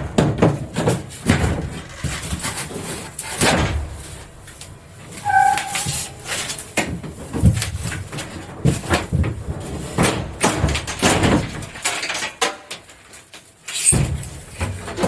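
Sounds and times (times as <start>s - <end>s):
boat panels knocking and scraping: 0.0s - 12.2s
squeak: 5.1s - 6.8s.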